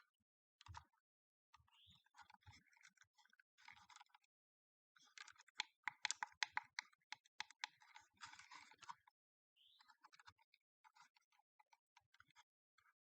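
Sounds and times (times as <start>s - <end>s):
hands handling small plastic parts: 5.2s - 7.7s.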